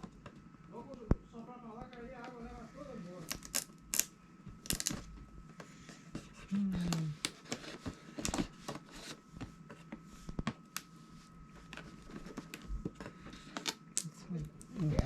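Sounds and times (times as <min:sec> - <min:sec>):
packaging clicks and rustles: 0:03.3 - 0:05.1.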